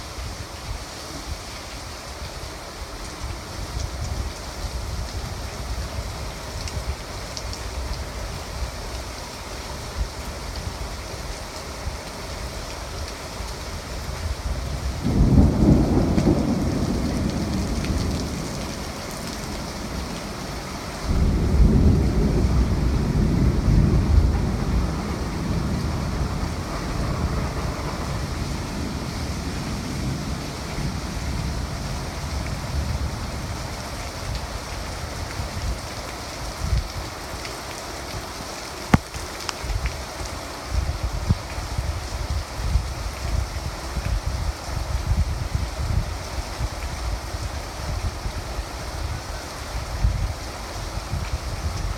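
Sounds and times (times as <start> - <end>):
steady rain: 0.0 - 51.9
wind buffeting microphone: 12.9 - 37.3, 38.9 - 51.9
thunder rolling: 15.0 - 32.0.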